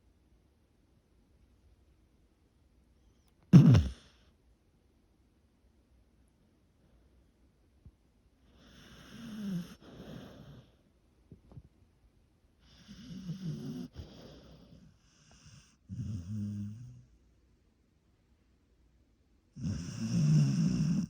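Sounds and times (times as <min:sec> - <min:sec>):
dog snoring: 0:03.5 - 0:04.2, 0:08.5 - 0:10.8, 0:12.6 - 0:17.1, 0:19.6 - 0:21.0.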